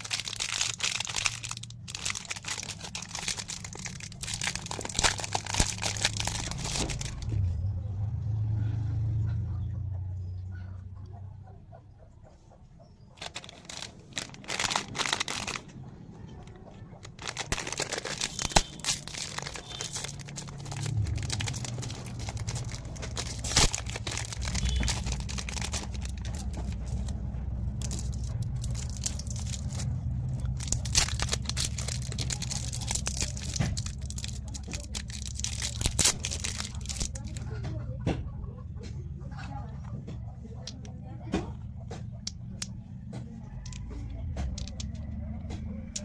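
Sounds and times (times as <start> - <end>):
plastic wrappers crinkling: 0.0 - 7.5, 13.2 - 37.5, 44.6 - 45.0.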